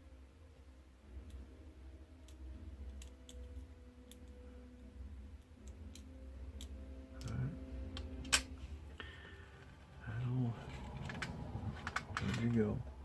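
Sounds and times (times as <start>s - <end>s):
low steady hum: 0.0s - 13.0s
small parts clicking: 2.2s - 4.4s, 10.8s - 12.6s.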